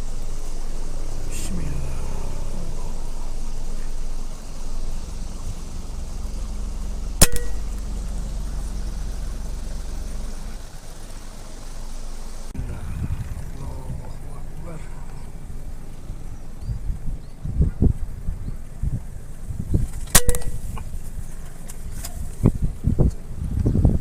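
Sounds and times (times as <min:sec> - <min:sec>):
steady low rumble: 0:00.0 - 0:24.0
air rifle firing crack: 0:07.2 - 0:07.8.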